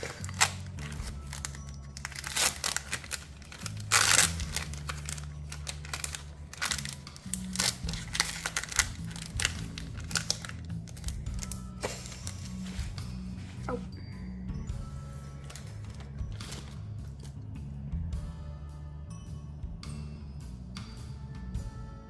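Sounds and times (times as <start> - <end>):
foil wrapper crinkling: 0.0 - 13.7, 15.3 - 17.3
wrapper ripping: 0.0 - 13.7, 15.4 - 17.3
soft background music: 0.0 - 22.0.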